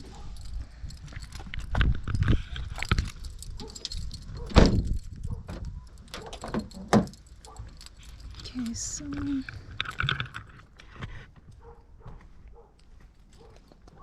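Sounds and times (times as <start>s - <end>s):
camera handling clicks and rustles: 9.1s - 11.2s.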